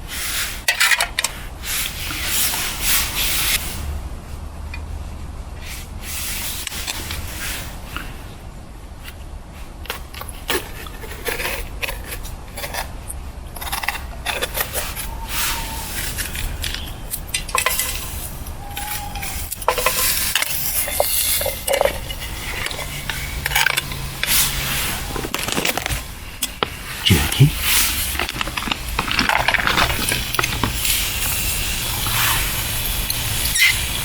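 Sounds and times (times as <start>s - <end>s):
metal cookware clinking and scraping: 16.7s - 18.2s
food sizzling: 29.9s - 34.0s.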